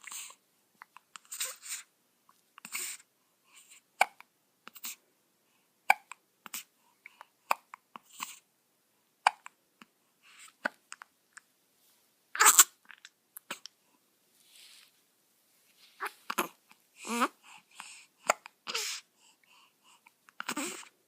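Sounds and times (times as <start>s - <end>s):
soft baby breathing: 0.0s - 1.9s, 2.6s - 3.9s, 9.3s - 11.0s, 13.4s - 15.0s, 15.6s - 21.0s
baby hiccuping: 4.0s - 5.0s, 5.8s - 8.4s, 9.2s - 9.6s, 12.3s - 13.7s, 16.0s - 17.4s, 18.2s - 19.0s, 20.3s - 20.9s.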